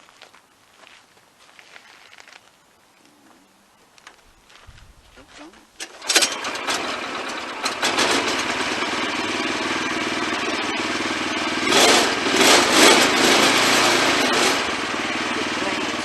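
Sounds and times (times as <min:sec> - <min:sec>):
sawmill engine running: 0:05.8 - 0:16.0.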